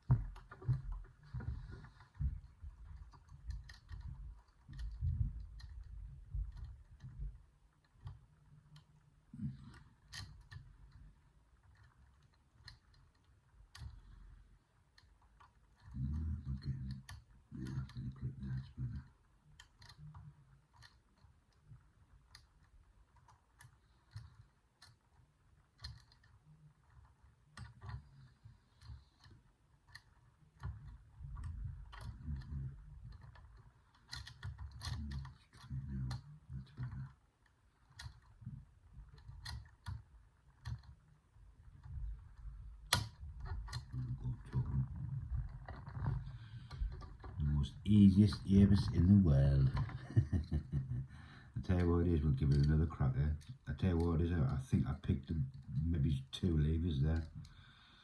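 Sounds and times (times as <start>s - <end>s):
lock pick clicking and scraping: 33.0s - 35.7s, 41.8s - 44.0s.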